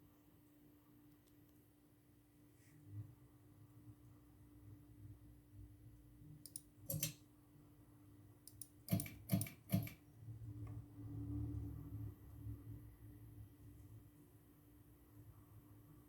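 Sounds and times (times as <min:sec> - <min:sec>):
sharp clicks: 0:06.4 - 0:07.2, 0:08.5 - 0:10.0.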